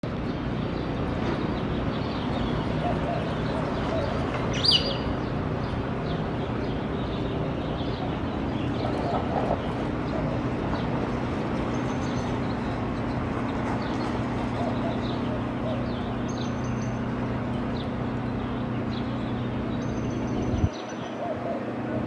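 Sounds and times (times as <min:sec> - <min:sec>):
faint low bird calls: 0:02.1 - 0:11.0.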